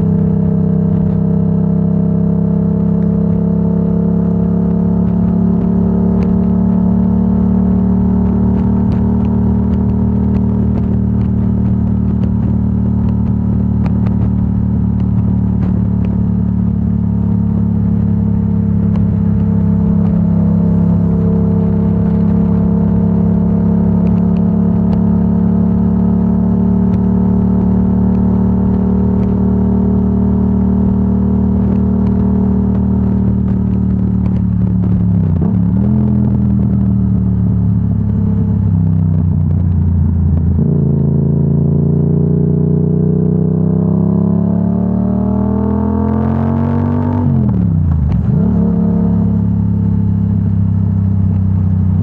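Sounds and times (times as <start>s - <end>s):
motorcycle engine revving: 0.0s - 52.0s.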